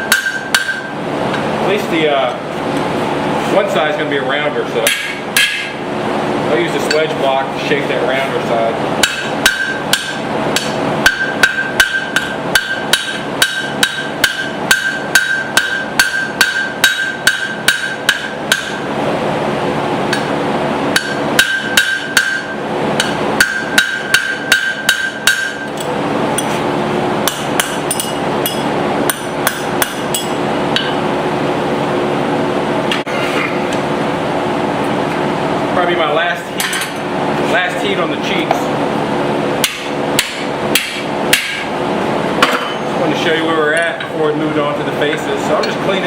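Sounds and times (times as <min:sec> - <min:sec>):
hammer ringing on steel: 0:00.0 - 0:00.9, 0:09.0 - 0:18.8, 0:21.0 - 0:25.7
steady hum: 0:00.0 - 0:46.0.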